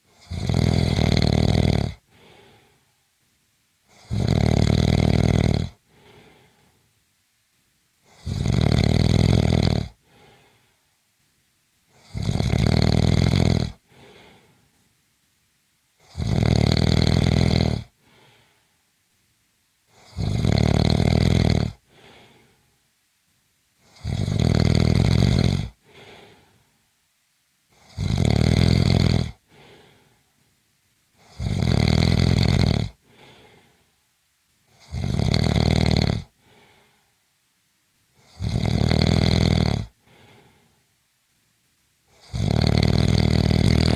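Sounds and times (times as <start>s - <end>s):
person snoring: 0.1s - 2.7s, 3.9s - 6.7s, 8.1s - 10.6s, 12.0s - 14.6s, 16.0s - 18.5s, 19.9s - 22.6s, 23.8s - 26.6s, 27.7s - 30.2s, 31.2s - 33.8s, 34.7s - 37.1s, 38.2s - 40.8s, 42.1s - 43.9s.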